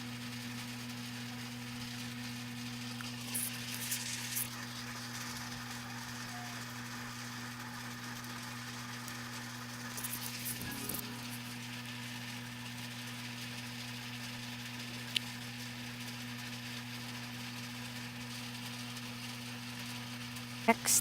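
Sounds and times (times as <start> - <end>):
food sizzling in a pan: 0.1 - 21.0
low hum: 9.8 - 12.2.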